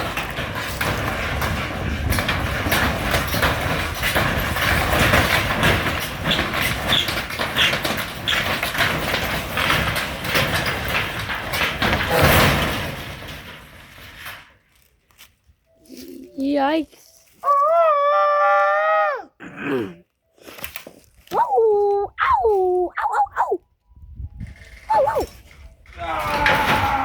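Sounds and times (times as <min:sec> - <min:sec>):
knocks and thuds: 0:00.0 - 0:14.1
boards creaking and cracking: 0:00.0 - 0:15.4, 0:24.4 - 0:27.0.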